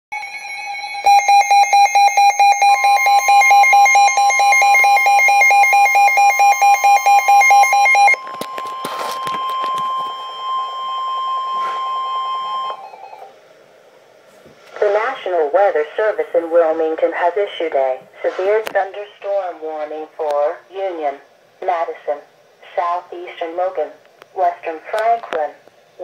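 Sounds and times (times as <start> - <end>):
steady warning alarm tone: 0.1 - 13.4
alarm beeping rapidly: 0.2 - 13.3.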